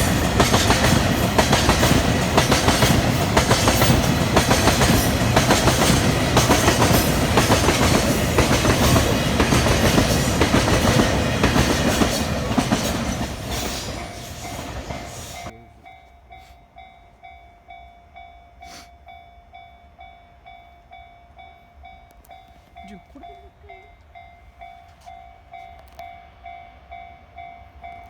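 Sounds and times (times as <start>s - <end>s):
train wheels clattering: 0.0s - 15.5s
crossing warning bell ringing: 0.0s - 28.0s.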